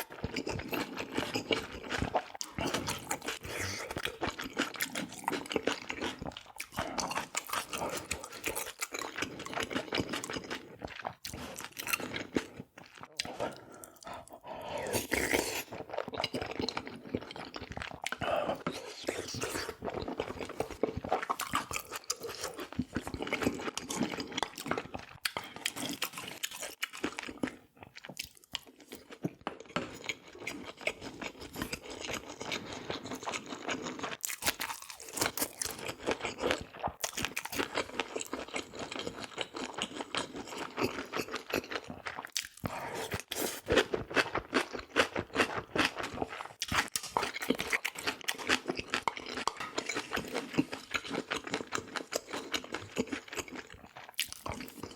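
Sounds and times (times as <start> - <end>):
person chewing and crunching food: 0.0 - 54.9.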